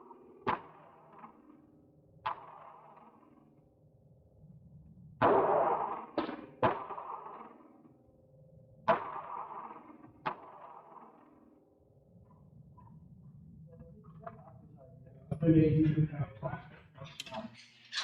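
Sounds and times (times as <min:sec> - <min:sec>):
gunshots with echo: 0:05.2 - 0:07.8, 0:08.9 - 0:11.5.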